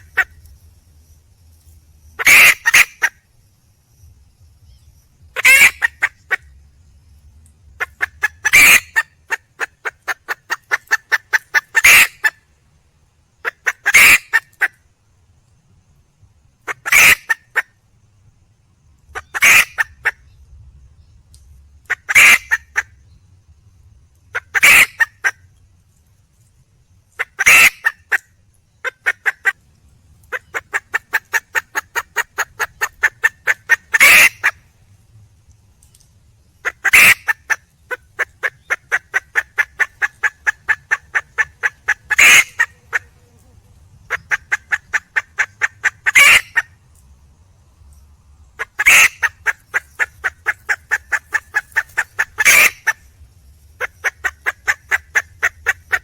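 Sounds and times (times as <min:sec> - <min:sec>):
hen clucking: 0:00.0 - 0:00.3, 0:02.2 - 0:03.1, 0:05.4 - 0:06.5, 0:07.8 - 0:12.4, 0:13.4 - 0:14.7, 0:16.7 - 0:17.6, 0:19.2 - 0:20.2, 0:21.9 - 0:22.9, 0:24.3 - 0:25.4, 0:27.2 - 0:28.2, 0:30.2 - 0:34.6, 0:36.6 - 0:46.7, 0:48.6 - 0:53.1, 0:53.8 - 0:56.0
hen squawking: 0:02.2 - 0:03.1, 0:05.4 - 0:06.2, 0:07.8 - 0:09.0, 0:09.6 - 0:12.3, 0:13.5 - 0:14.4, 0:19.2 - 0:20.0, 0:24.4 - 0:25.3, 0:27.2 - 0:28.2, 0:30.3 - 0:34.6, 0:36.6 - 0:43.1, 0:44.1 - 0:46.7, 0:48.6 - 0:53.0.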